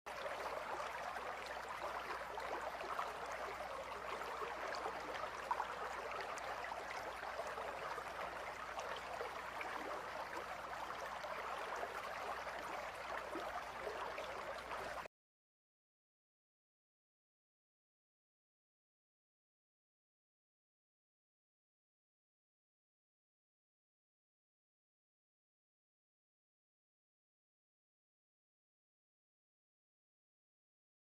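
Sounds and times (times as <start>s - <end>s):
river water babbling: 0.1s - 15.1s.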